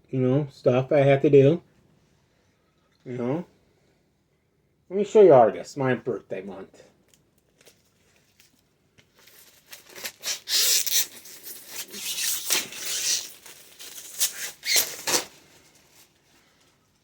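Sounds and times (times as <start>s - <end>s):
paper pages rustling: 7.4s - 10.2s.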